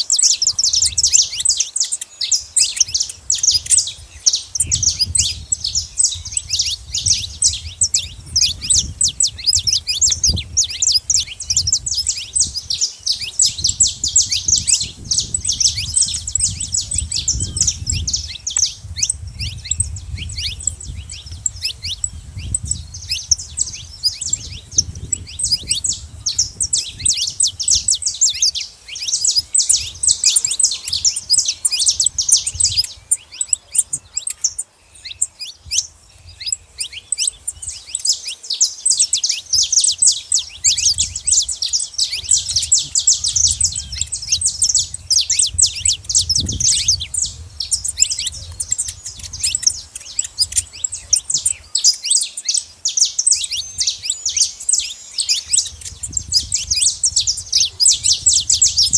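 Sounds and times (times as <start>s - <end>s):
finches chirping: 0.0s - 58.9s.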